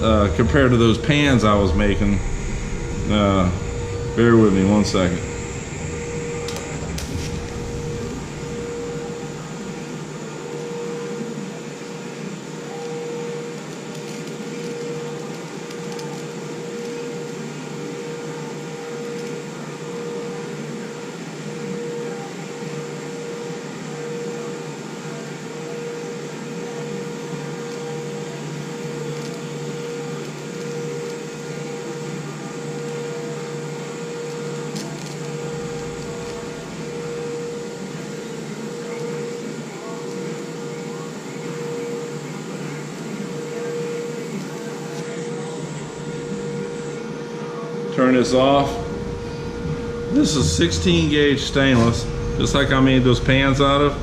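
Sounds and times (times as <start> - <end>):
welding arc hissing and buzzing: 0.0 - 11.6, 34.0 - 42.2, 48.0 - 54.0
welding arc strike clicks: 4.6 - 9.9.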